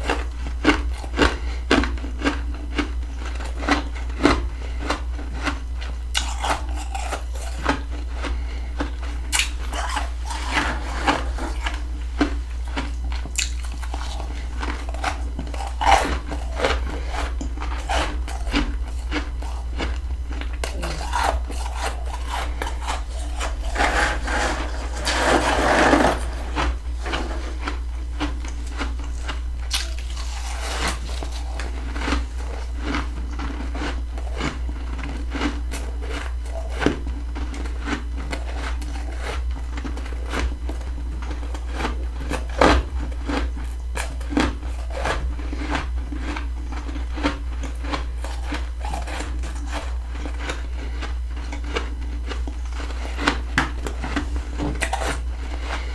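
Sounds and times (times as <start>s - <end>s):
low hum: 8.6s - 33.4s
frost being crunched by teeth: 9.2s - 11.8s, 26.2s - 33.5s.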